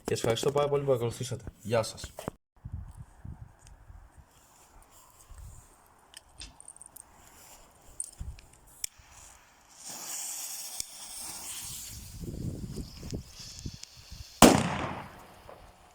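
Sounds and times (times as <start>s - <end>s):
firecracker fuse hissing: 8.7s - 15.9s.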